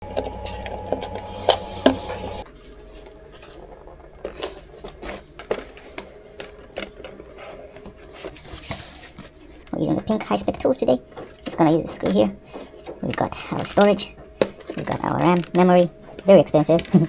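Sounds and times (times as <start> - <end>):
steady hum: 0.0 - 2.4.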